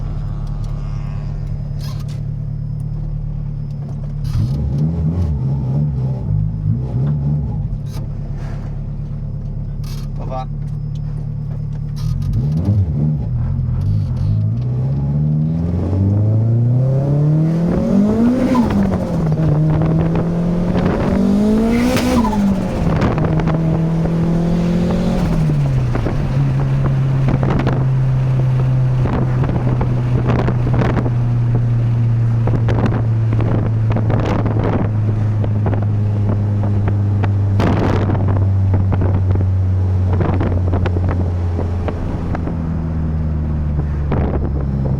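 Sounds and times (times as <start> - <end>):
turbo flutter: 0.0 - 4.8
turbocharged engine revving: 0.0 - 44.9.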